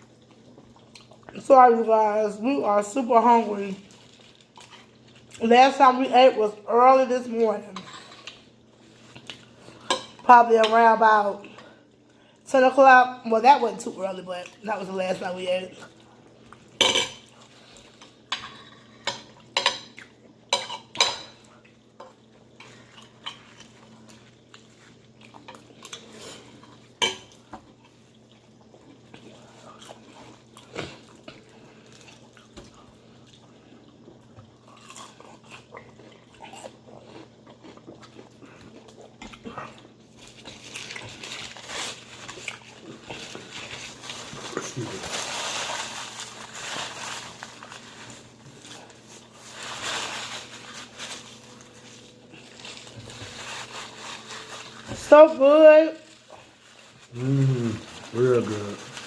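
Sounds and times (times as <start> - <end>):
chewing: 0.1 - 1.4, 21.5 - 44.8
cutlery and dishes clinking: 18.3 - 21.4.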